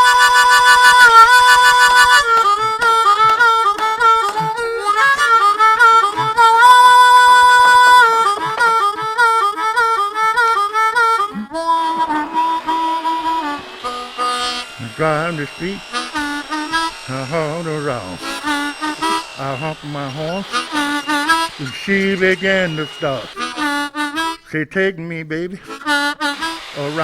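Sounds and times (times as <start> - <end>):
blues harmonica playing: 0.0 - 27.0.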